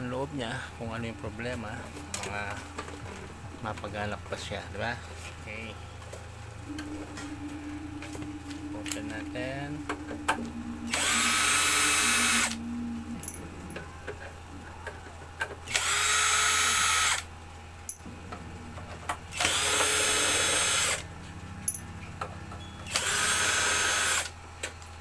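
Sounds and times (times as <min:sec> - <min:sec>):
power drill bursts: 0:10.9 - 0:12.6, 0:15.7 - 0:17.3, 0:19.3 - 0:21.0, 0:22.8 - 0:24.3.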